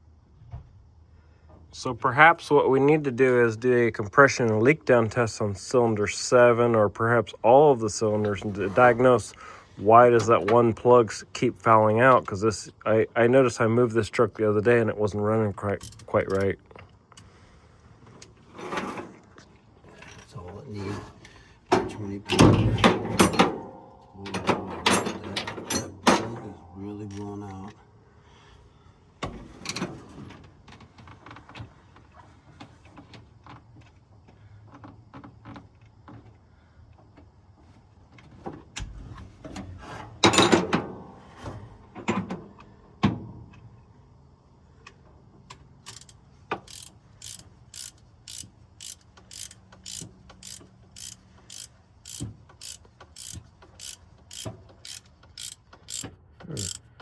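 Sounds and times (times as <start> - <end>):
metallic clinks and knocks: 22.8 - 27.8
ratchet wrench clicking: 45.8 - 56.9.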